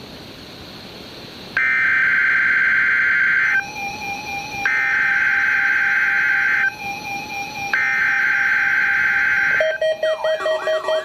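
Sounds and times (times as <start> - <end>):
faint steady tone: 0.0 - 11.0.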